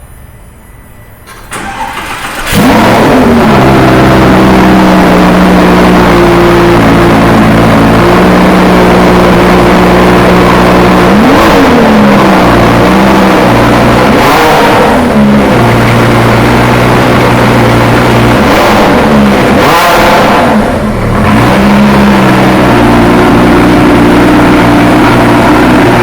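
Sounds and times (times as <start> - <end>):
engine starter turning over: 1.2 - 3.9
car engine revving and idling: 1.3 - 26.0.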